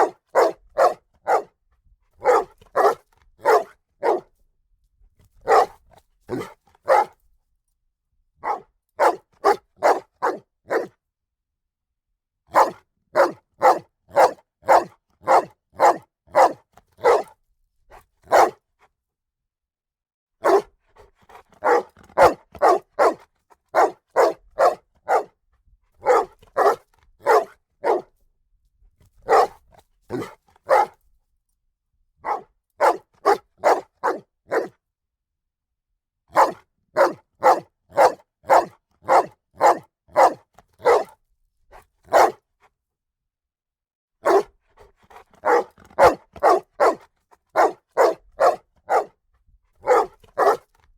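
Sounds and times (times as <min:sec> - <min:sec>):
dog barking loudly: 0:00.0 - 0:01.5, 0:02.2 - 0:04.3, 0:05.4 - 0:07.2, 0:08.4 - 0:10.9, 0:12.5 - 0:17.3, 0:18.3 - 0:18.6, 0:20.4 - 0:20.7, 0:21.6 - 0:25.3, 0:26.0 - 0:28.1, 0:29.2 - 0:31.0, 0:32.2 - 0:34.7, 0:36.3 - 0:41.2, 0:42.1 - 0:42.4, 0:44.2 - 0:44.5, 0:45.1 - 0:49.1, 0:49.8 - 0:50.7.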